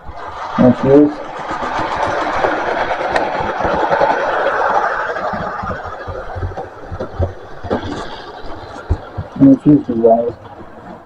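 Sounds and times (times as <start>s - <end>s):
model train motor and wheels: 0.0s - 11.0s.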